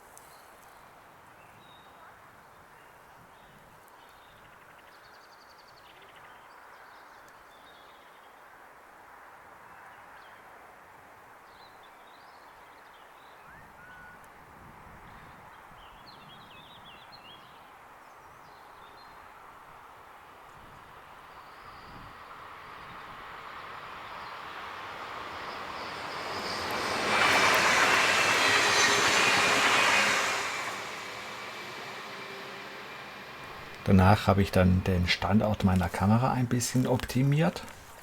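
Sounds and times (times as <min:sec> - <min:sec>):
faint outdoor hiss: 0:26.8 - 0:38.0.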